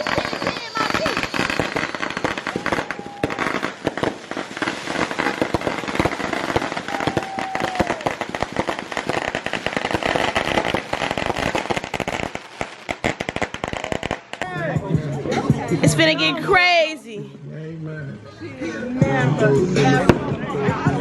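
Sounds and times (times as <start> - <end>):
firework whistling: 0.0 - 14.4
fireworks crackling and popping: 0.0 - 14.8.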